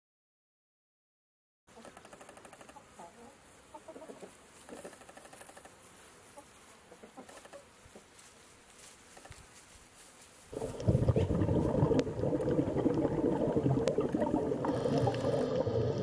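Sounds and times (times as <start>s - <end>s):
light hiss: 1.8s - 11.3s.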